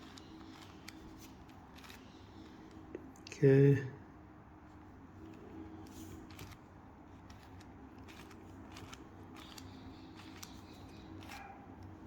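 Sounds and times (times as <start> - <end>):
puzzle cube clicking as turned: 0.0 - 2.0, 7.2 - 11.4.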